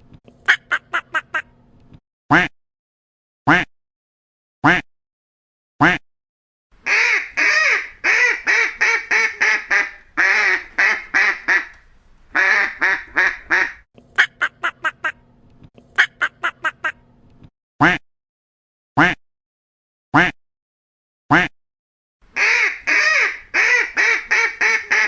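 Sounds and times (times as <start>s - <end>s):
duck quacking: 6.8s - 13.8s, 22.4s - 25.0s
faint steady hum: 6.8s - 13.8s, 22.2s - 25.0s.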